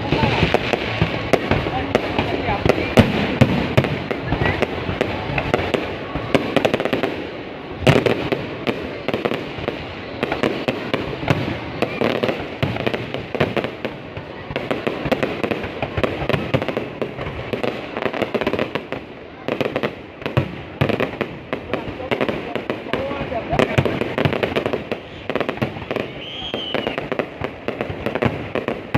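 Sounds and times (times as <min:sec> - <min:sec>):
fireworks banging and crackling: 0:00.0 - 0:28.9.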